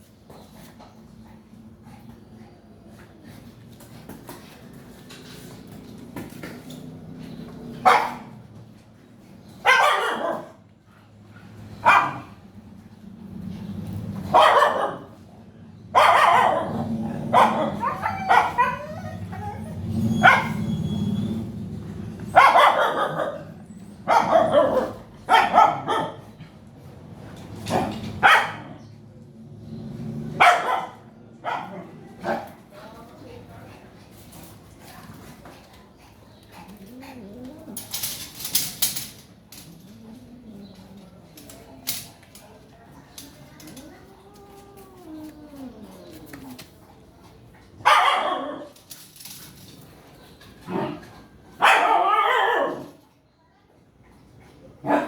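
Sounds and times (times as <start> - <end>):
dog barking: 7.8 - 8.3, 9.6 - 10.6, 11.8 - 12.3, 14.3 - 15.2, 16.0 - 18.9, 20.1 - 20.7, 22.3 - 26.2, 27.7 - 28.8, 30.4 - 32.5, 47.8 - 48.7, 51.6 - 53.0.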